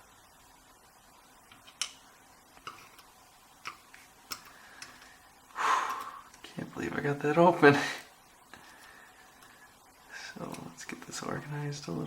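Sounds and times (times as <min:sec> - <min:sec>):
small clicks and taps of lock parts: 0:02.6 - 0:05.1.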